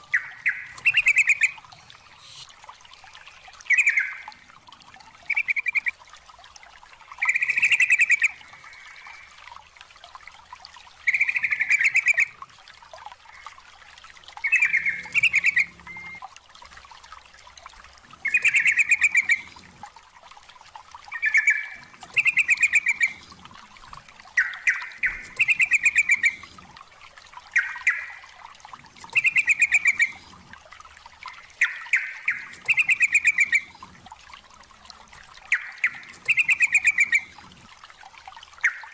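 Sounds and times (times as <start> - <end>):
bulbul singing: 0.0 - 2.5, 14.4 - 16.2, 18.2 - 19.5, 24.4 - 26.5, 29.1 - 30.2, 31.6 - 33.8.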